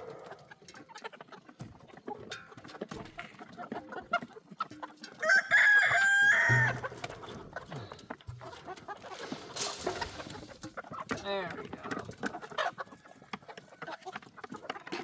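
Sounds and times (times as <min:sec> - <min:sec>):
hens clucking: 0:00.0 - 0:15.0
rooster crowing: 0:05.2 - 0:06.9.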